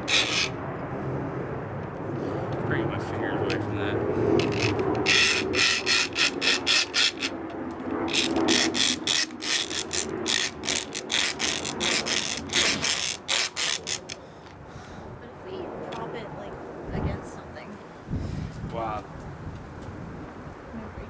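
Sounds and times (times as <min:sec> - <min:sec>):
hacksaw rasping on metal: 0:00.0 - 0:00.6, 0:04.4 - 0:07.4, 0:08.1 - 0:14.2.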